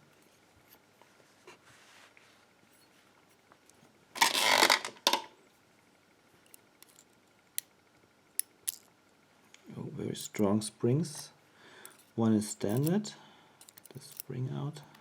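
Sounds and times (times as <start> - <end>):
metal lock parts rattling: 6.5 - 7.1, 8.4 - 8.9, 11.9 - 13.0, 13.6 - 14.4.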